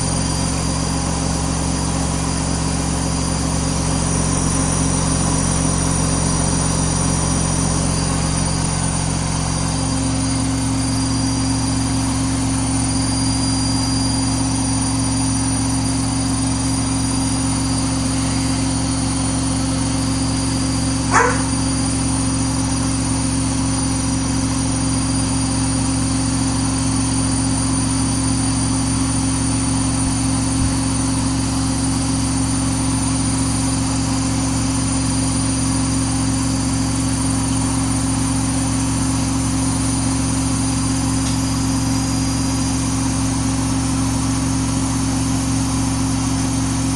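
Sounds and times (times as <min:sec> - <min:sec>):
washing machine running: 0:00.0 - 0:46.9.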